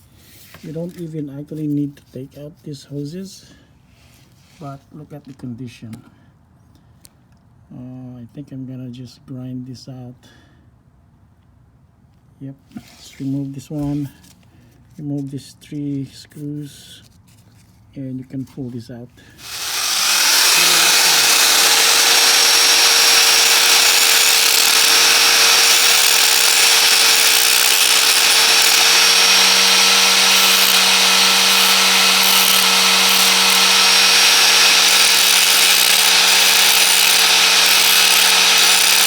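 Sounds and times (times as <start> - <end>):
power grinder grinding metal: 19.4 - 39.0.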